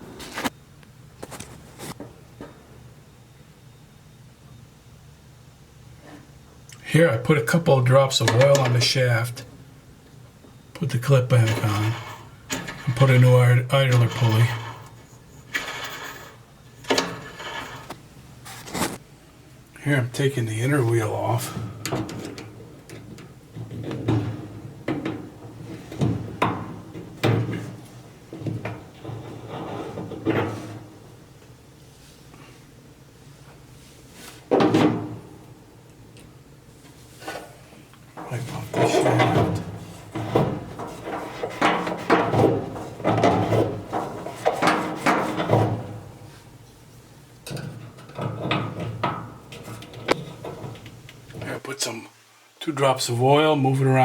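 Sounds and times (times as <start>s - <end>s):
metal parts clunking and clicking: 11.4s - 13.2s, 13.9s - 18.0s, 47.4s - 51.4s
metal parts scraping and clicking: 13.8s - 18.0s.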